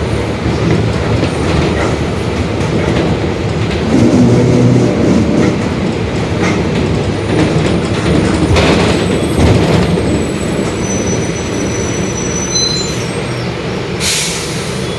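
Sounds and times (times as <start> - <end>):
bus drivetrain and road rumble: 0.0 - 14.9
high-pitched squeals: 9.0 - 13.6.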